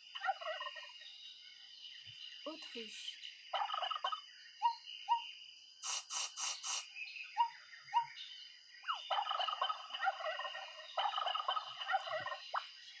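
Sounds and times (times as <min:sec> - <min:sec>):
turkey gobbling: 0:00.2 - 0:00.9, 0:03.6 - 0:04.2, 0:08.9 - 0:12.7.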